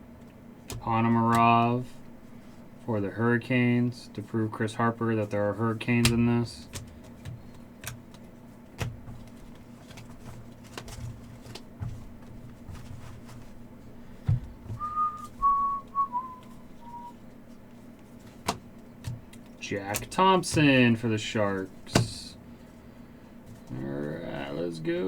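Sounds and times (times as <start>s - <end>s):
steady low hum: 0.0s - 25.0s
trading cards being handled: 5.1s - 14.1s
person whistling: 14.8s - 17.2s.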